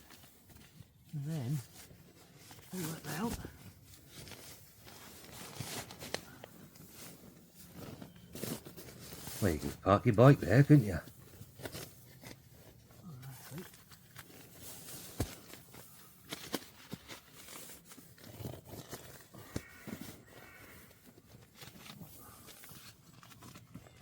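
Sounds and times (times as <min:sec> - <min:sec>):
fabric rustling: 0:00.0 - 0:09.7.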